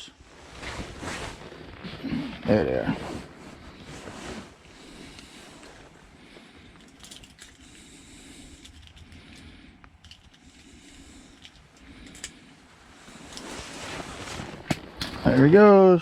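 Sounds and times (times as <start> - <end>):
pliers clicking and rustling: 6.8 - 7.6, 8.6 - 12.4.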